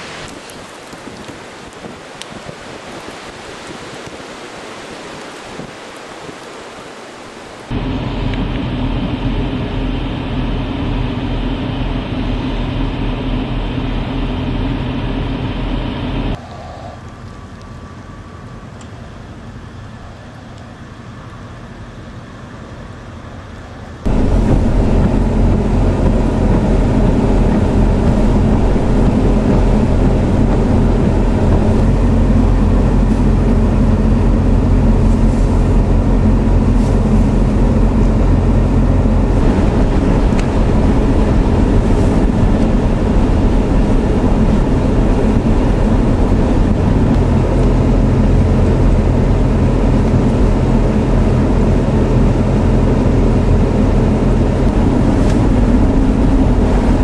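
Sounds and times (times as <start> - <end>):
car engine and road noise: 7.5 - 57.0.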